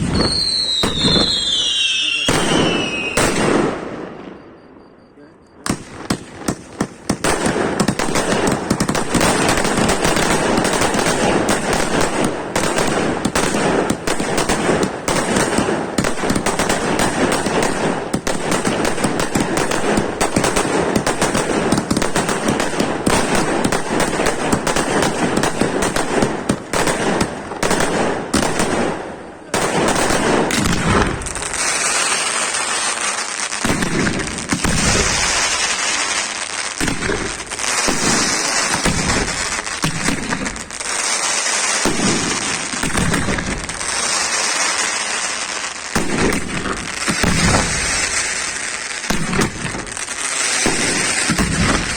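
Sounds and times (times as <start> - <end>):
firework hissing crackle: 0.0 - 3.4, 6.1 - 28.7, 29.7 - 51.9
rapid firework bursts: 5.7 - 51.9.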